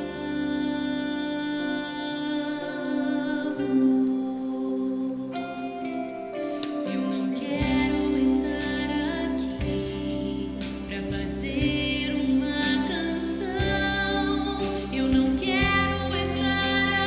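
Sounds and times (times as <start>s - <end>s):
person singing: 0.0s - 17.0s
sustained instrumental chords: 5.3s - 17.0s.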